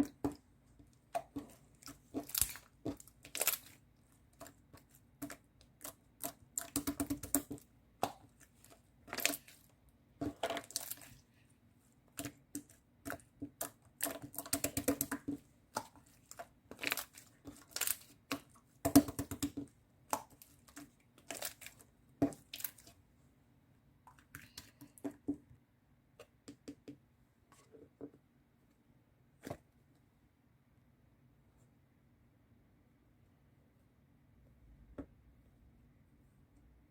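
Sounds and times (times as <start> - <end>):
small objects clicking and tapping: 12.1 - 22.9.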